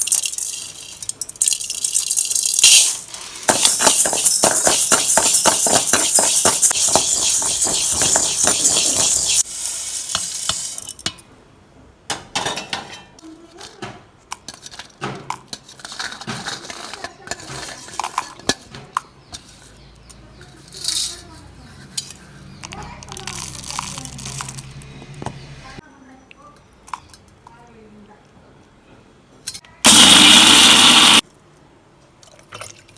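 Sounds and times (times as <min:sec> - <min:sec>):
utensils clinking: 0:00.0 - 0:11.2
food sizzling in a pan: 0:02.0 - 0:10.9, 0:29.9 - 0:31.2
spoon scraping a pan: 0:02.7 - 0:10.8.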